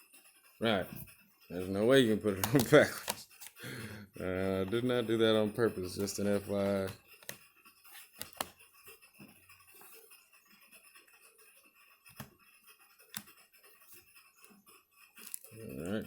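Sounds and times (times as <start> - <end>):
laptop parts clicking: 2.4 - 3.6, 6.0 - 8.6, 13.0 - 13.4, 15.2 - 15.9.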